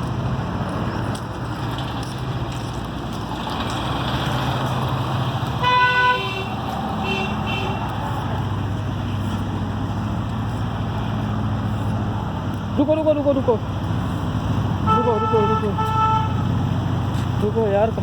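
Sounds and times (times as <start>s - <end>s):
engine running: 0.0s - 18.0s
vehicle horn blowing: 5.6s - 7.8s, 14.9s - 16.5s.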